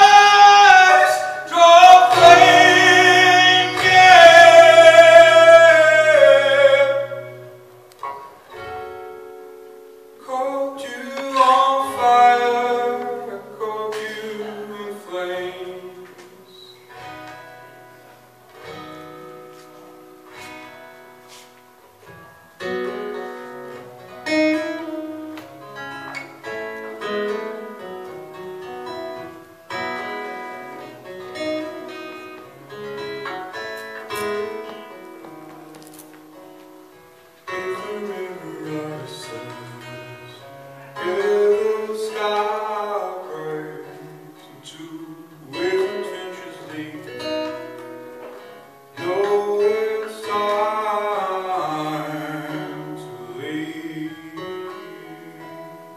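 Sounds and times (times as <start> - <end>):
person singing: 0.0 - 7.6, 10.2 - 16.7, 37.5 - 47.6, 49.0 - 55.9
acoustic guitar strumming: 0.0 - 55.9.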